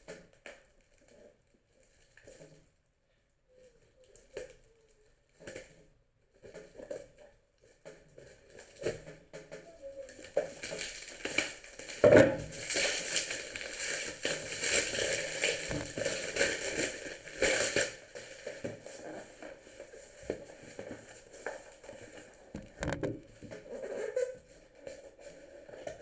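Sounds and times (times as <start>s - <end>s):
plastic crinkling and rustling: 0.0s - 2.8s, 3.5s - 26.0s
clicks and knocks: 22.6s - 23.4s.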